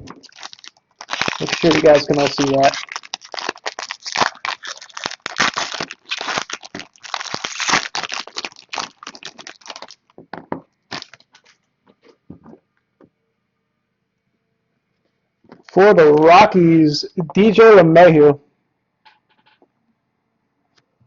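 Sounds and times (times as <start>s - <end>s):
plastic wrapping crinkling and tearing: 0.0s - 10.2s, 10.9s - 11.6s.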